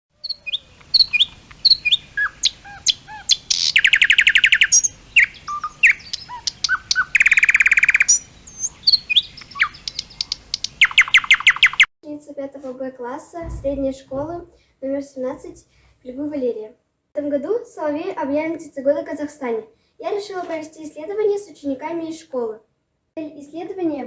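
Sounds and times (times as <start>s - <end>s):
nightingale singing: 0.2s - 11.9s.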